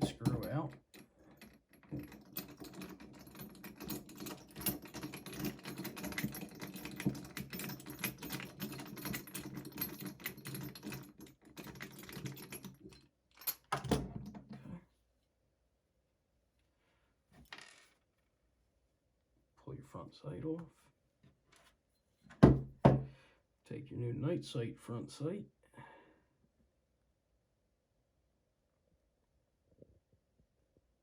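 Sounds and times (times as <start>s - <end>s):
hand tool clicking and rattling: 0.0s - 13.8s.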